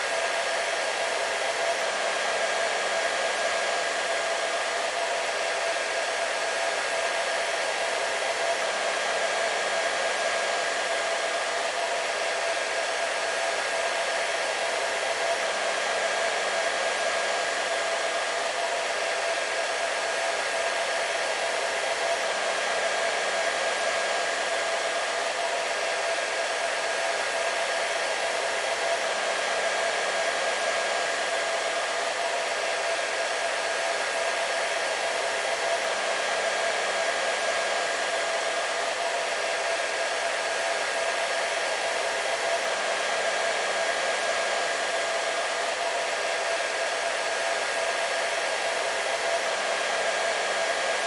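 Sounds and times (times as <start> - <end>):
hair dryer running: 0.0 - 51.0.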